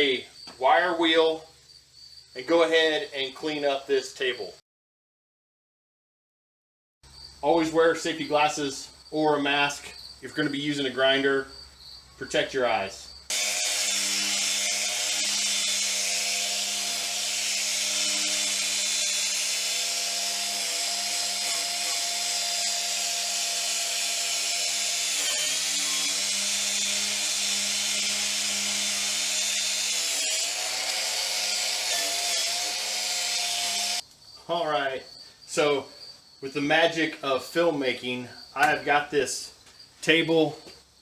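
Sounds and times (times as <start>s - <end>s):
grinder motor whine: 13.3s - 34.0s.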